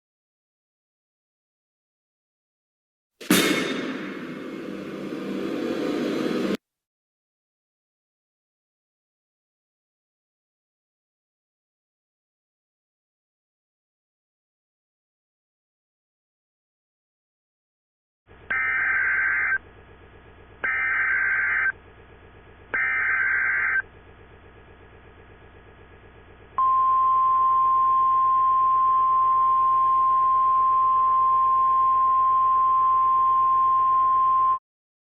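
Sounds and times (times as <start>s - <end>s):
data warble bursts: 18.5s - 19.6s, 20.6s - 21.7s, 22.7s - 23.8s
loud high alert tone: 18.5s - 19.6s, 22.8s - 23.8s.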